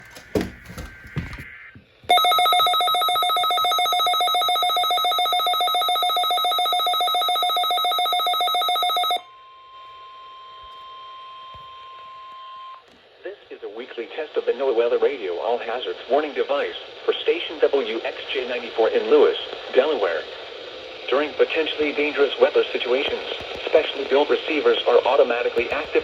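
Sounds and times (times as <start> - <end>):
faint steady alarm tone: 0.0 - 13.0.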